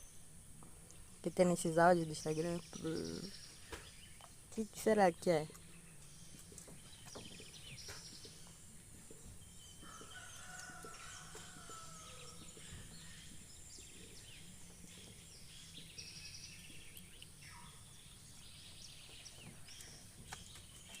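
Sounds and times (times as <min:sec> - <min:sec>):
birds chirping: 0:00.0 - 0:21.0
distant rooster call: 0:09.7 - 0:13.0.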